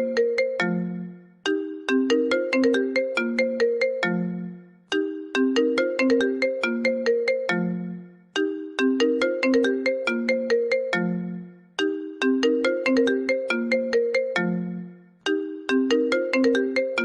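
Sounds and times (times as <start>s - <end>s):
phone ringtone melody: 0.0s - 17.0s.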